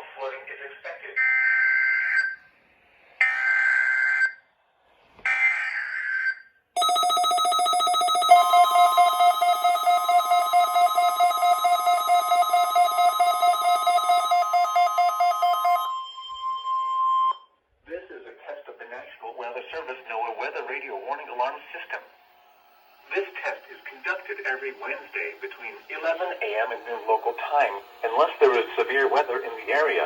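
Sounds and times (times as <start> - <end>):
steady single-pitch alarm tone: 1.2 - 2.5, 3.2 - 4.5, 5.3 - 17.6
rapidly pulsing alarm tone: 5.3 - 17.4, 19.4 - 30.0
digital data tones: 6.8 - 17.4.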